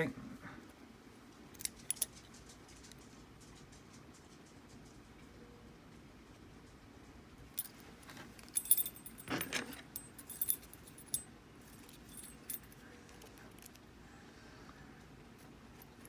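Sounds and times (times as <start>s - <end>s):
keys jingling: 1.6s - 2.2s, 7.6s - 13.8s, 15.8s - 16.0s.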